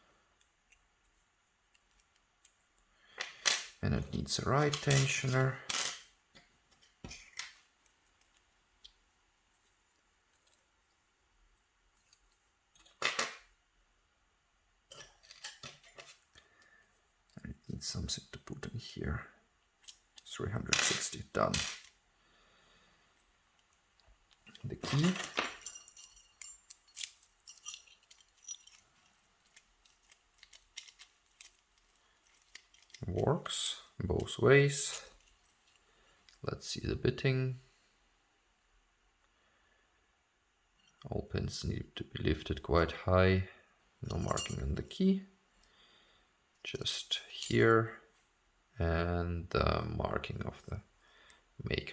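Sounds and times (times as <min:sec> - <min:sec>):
key clicking and scraping in lock: 0:24.5 - 0:33.1.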